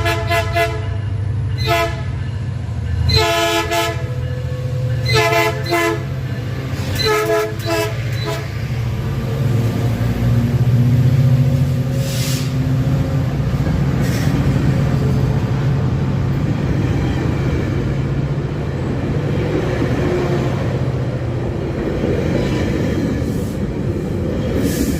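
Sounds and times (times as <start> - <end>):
train chime horn blast: 0.0 - 2.2, 3.0 - 6.2, 6.9 - 8.6
train engine drone: 0.0 - 24.9.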